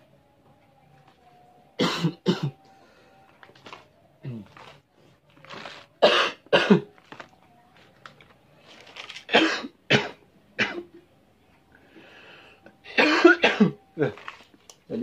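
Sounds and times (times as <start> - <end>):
person coughing: 1.8 - 2.6, 6.0 - 6.9, 9.3 - 10.9, 12.9 - 13.8.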